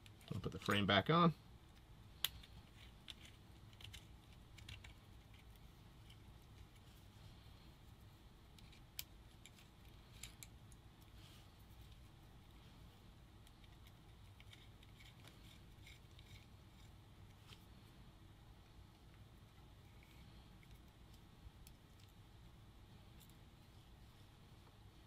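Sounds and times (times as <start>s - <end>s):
small clicks of parts handled: 1.7s - 6.9s, 8.5s - 11.1s, 19.9s - 22.2s.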